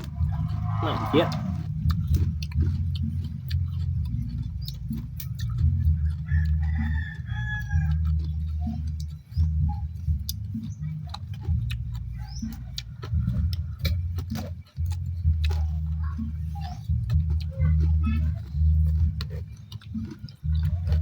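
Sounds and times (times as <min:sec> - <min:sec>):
low rumble: 0:00.0 - 0:06.1
rooster crowing: 0:06.3 - 0:08.0.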